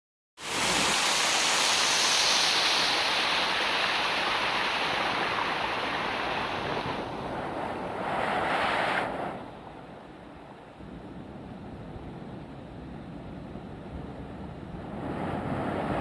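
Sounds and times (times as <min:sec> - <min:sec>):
stream water rushing over rocks: 0:00.4 - 0:07.3.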